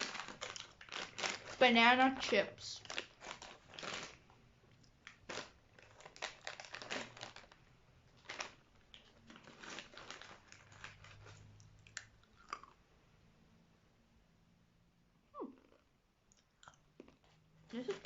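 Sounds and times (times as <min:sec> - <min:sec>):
crisp chips being chewed: 0:00.0 - 0:01.7, 0:02.8 - 0:12.8, 0:16.3 - 0:18.0
snack packet crinkling: 0:00.0 - 0:12.8.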